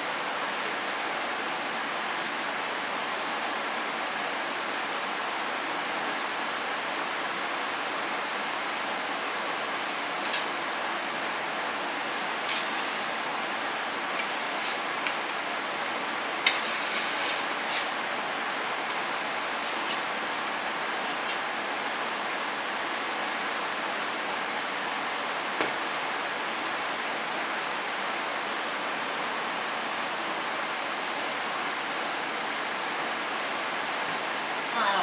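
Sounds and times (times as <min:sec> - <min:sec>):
steady background hiss: 0:00.0 - 0:35.0
blade scraping paste: 0:12.5 - 0:13.1, 0:14.2 - 0:15.4, 0:16.4 - 0:18.0, 0:18.9 - 0:21.5.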